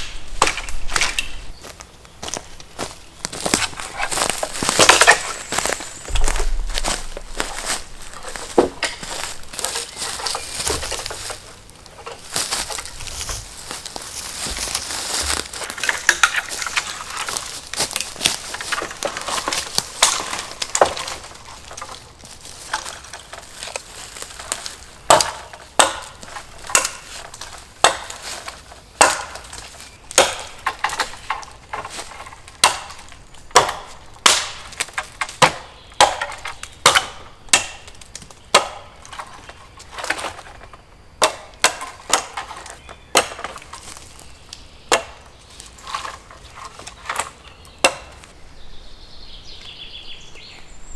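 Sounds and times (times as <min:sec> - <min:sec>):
dry wood and brush crunching: 0:00.0 - 0:50.8
sharp wooden knocks: 0:03.4 - 0:11.4, 0:22.7 - 0:39.5, 0:47.8 - 0:48.3.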